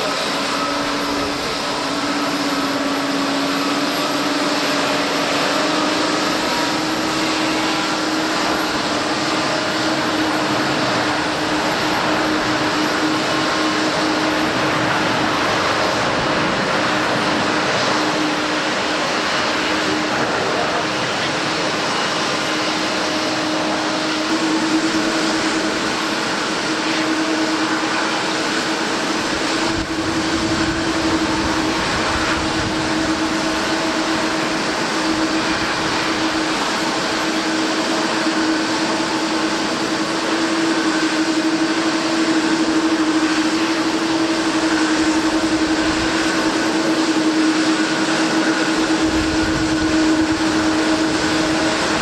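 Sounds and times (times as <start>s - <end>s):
jet engines whining: 0.0s - 52.0s
wind rumble on microphone: 27.0s - 39.3s, 40.8s - 52.0s.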